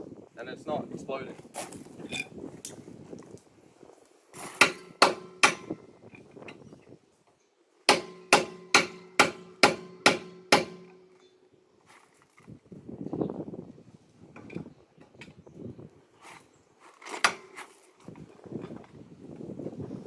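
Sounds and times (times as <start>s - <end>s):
hammer blows on metal: 4.5s - 5.8s, 7.9s - 11.3s
metal ringing: 4.6s - 5.8s, 7.9s - 11.4s.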